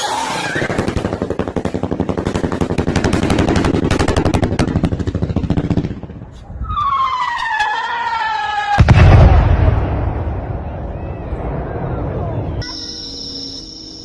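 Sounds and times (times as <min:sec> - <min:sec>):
whistling firework: 0:00.0 - 0:01.0, 0:06.5 - 0:13.6
fireworks bangs: 0:00.6 - 0:12.3.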